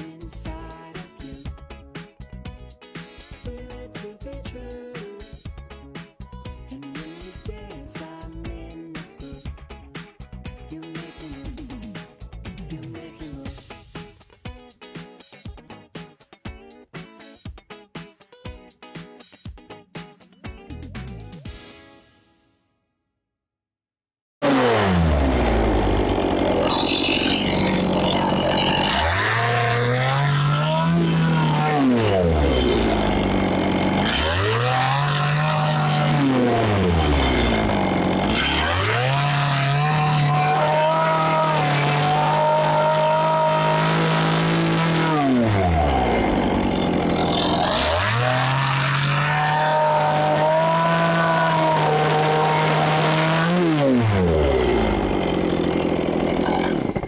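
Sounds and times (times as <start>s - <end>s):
chainsaw revving: 24.4s - 57.0s.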